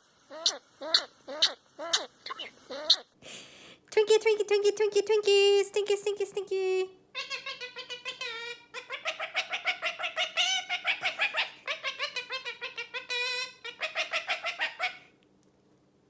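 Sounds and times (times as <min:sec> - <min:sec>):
parrot calling: 0:00.3 - 0:03.2, 0:07.1 - 0:15.1.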